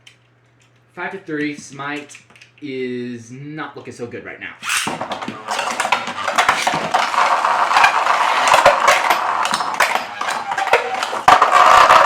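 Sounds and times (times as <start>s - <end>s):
spinning tops clashing clicks: 4.6s - 12.0s
spinning tops whirring and scraping: 4.6s - 12.0s.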